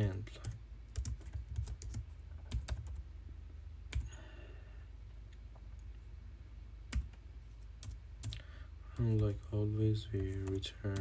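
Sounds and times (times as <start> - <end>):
steady low hum: 0.0 - 11.0
computer keyboard keystrokes: 0.4 - 3.0.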